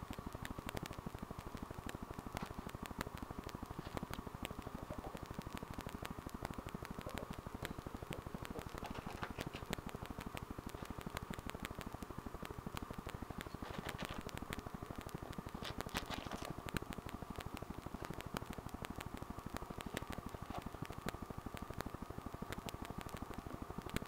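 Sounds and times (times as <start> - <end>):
crackling static: 0.0 - 24.0
faint clicks: 0.0 - 24.0
scratchy rustles: 13.4 - 14.3.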